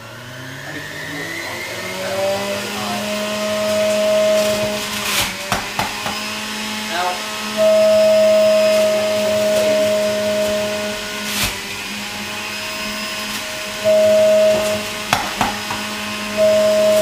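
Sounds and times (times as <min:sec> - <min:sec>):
juicer motor whine: 0:00.0 - 0:17.0
sharp knocks: 0:05.4 - 0:06.2, 0:15.1 - 0:15.9.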